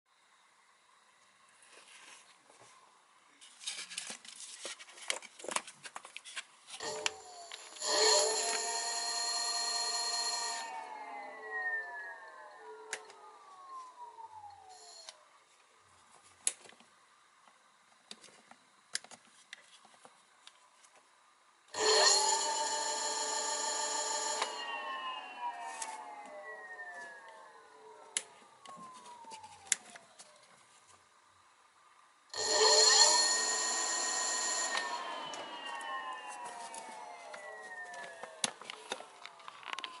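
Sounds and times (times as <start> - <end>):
electric motor whine spinning down: 6.8 - 15.1, 21.8 - 29.8, 32.4 - 40.0.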